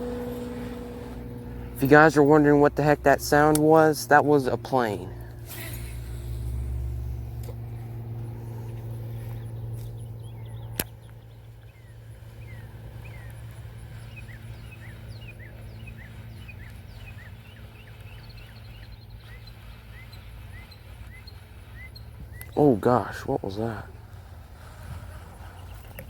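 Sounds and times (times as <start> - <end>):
plane passing rumble: 0.0 - 26.0
bird chirping: 8.6 - 22.8.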